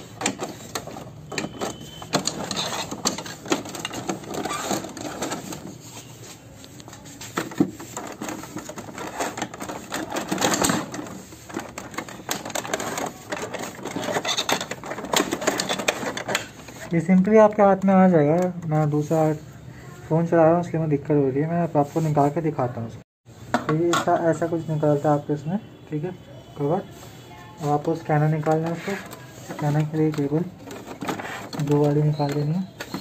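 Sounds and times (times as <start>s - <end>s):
plastic casing clicking and rattling: 0.0s - 5.7s, 7.4s - 16.6s.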